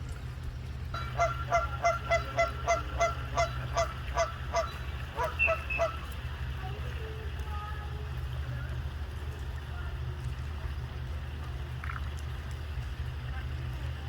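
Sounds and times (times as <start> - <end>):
steady low rumble: 0.0 - 14.0
bird calling rapidly: 1.0 - 6.1.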